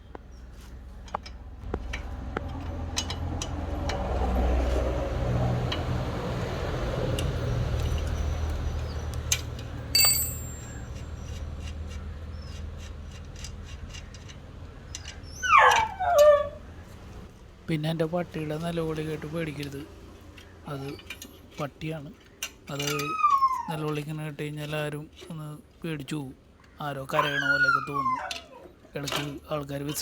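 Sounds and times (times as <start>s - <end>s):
spanner clicking on metal: 1.1s - 4.0s, 9.3s - 11.0s
handling noise: 9.7s - 11.0s
bright metallic ping: 10.0s - 10.8s
dog crying: 15.2s - 16.7s, 22.9s - 24.0s, 27.1s - 28.8s.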